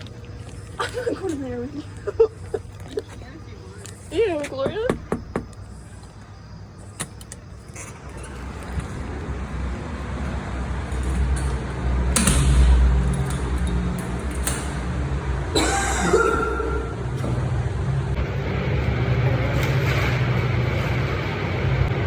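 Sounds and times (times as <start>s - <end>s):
motor vehicle rumble: 0.0s - 22.0s.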